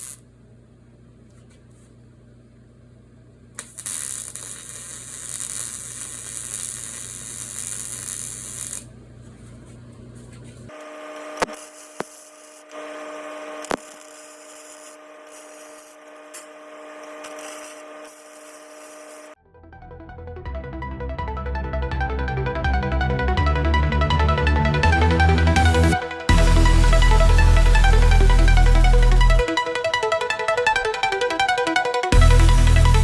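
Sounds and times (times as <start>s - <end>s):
welder arc crackling hiss: 0.0s - 0.2s, 3.6s - 8.9s, 11.2s - 19.4s, 26.3s - 29.4s
steady electrical hum: 0.0s - 19.4s, 26.3s - 29.5s
steady tones: 24.9s - 33.0s.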